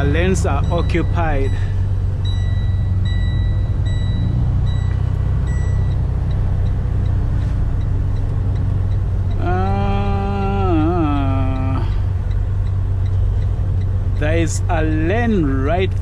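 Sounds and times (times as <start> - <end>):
person speaking: 0.0 - 1.8, 9.4 - 12.1
truck diesel engine rumbling: 0.0 - 16.0
electronic beeps: 0.5 - 6.0.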